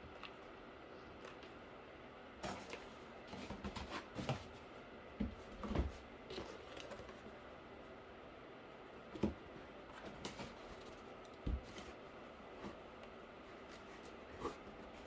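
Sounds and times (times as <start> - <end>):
cardboard knocks and rustles: 5.2 - 7.2, 10.1 - 12.0.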